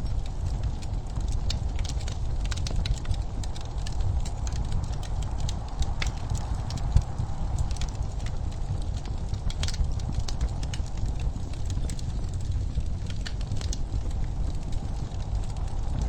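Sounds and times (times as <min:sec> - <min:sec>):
low rumble of burning logs: 0:00.0 - 0:16.0
wood fire crackling: 0:00.0 - 0:16.0.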